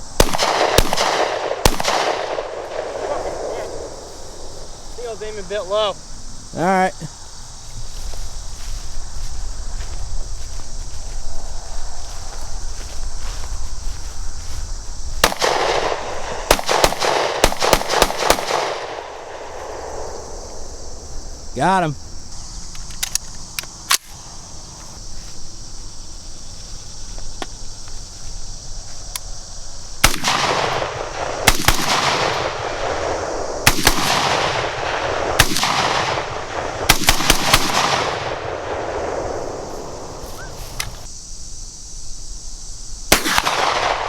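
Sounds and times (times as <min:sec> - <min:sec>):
gunshots with rolling echo: 0:00.2 - 0:04.8, 0:15.2 - 0:20.8, 0:30.0 - 0:40.2, 0:43.1 - 0:44.0.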